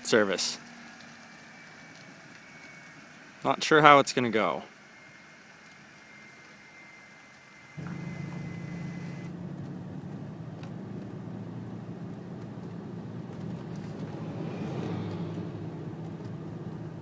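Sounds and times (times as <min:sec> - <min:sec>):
vehicle engine and road drone: 0:04.7 - 0:17.0.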